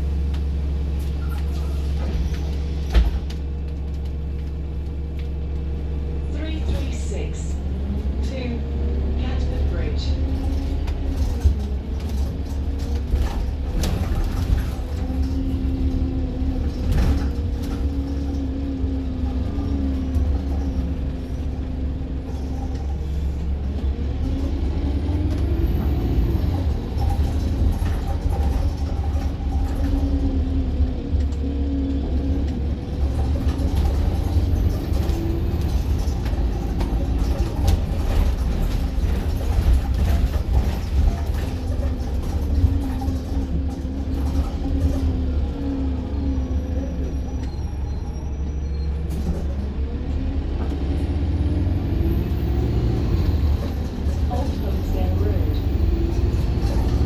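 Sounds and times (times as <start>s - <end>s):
bus engine rumbling: 0.0s - 57.0s
body knocks and rattles: 32.9s - 45.3s.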